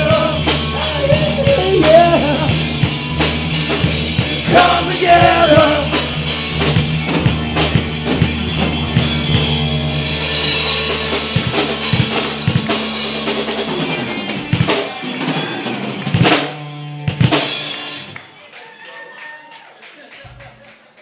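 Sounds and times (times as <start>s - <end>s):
drum and cymbal hits: 0.0s - 18.2s
rock band held chord: 0.0s - 18.4s.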